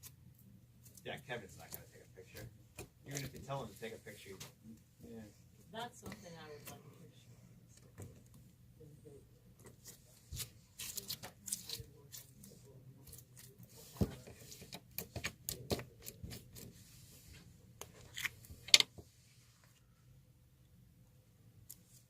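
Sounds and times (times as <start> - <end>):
hands squishing slime: 9.8 - 16.7.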